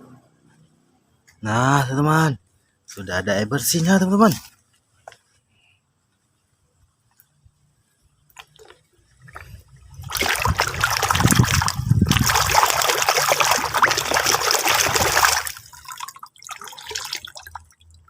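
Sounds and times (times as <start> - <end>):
water pouring and splashing: 8.4 - 18.0.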